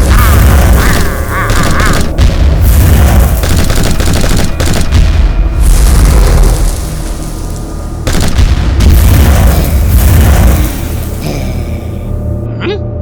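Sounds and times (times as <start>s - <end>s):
gunfire sound effects: 0.0s - 5.4s, 8.0s - 11.2s
booming explosion sound effects: 0.0s - 12.2s
music: 0.0s - 13.0s.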